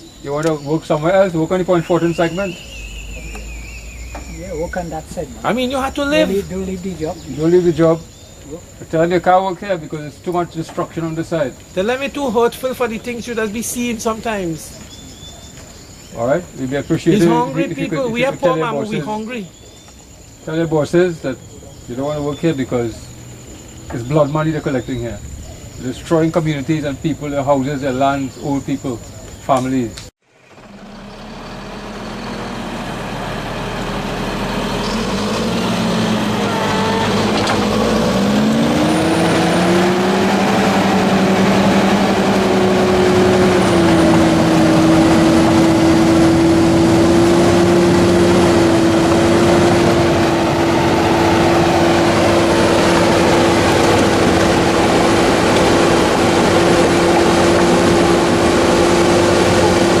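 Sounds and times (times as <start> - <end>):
bulldozer diesel engine revving: 0.0 - 9.3, 16.2 - 19.7, 30.3 - 60.0.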